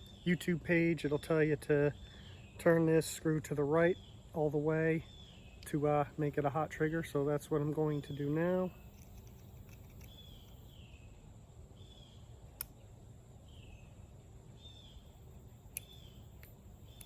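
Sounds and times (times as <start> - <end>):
bird chirping: 0.0 - 17.0
sharp clicks: 8.8 - 10.7, 15.7 - 17.0.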